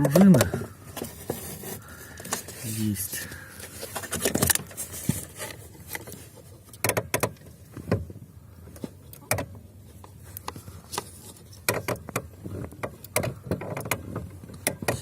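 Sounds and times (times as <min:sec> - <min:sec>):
clutch pedal clicks and creaks: 0:00.0 - 0:01.2, 0:05.5 - 0:08.1, 0:08.7 - 0:15.0.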